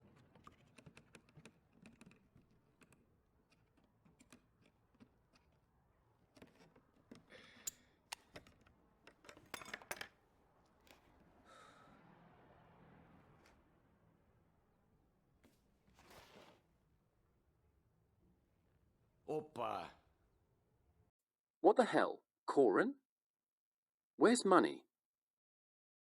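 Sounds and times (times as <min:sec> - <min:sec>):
rustling handling noise: 0:15.4 - 0:16.6.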